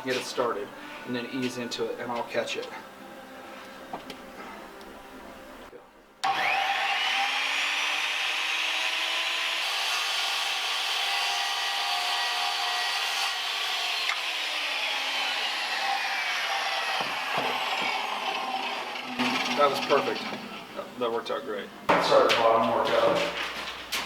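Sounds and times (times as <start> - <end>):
electric saw cutting wood: 6.2 - 20.6.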